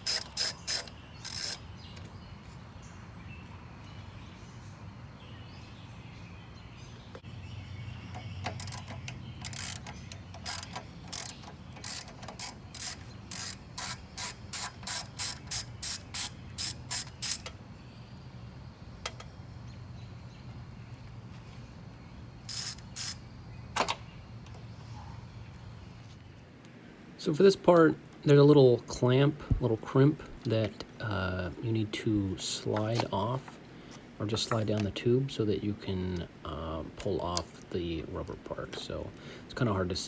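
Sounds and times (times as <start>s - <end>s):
ratchet wrench clicking: 0.0s - 1.6s, 8.2s - 17.5s, 22.5s - 23.2s.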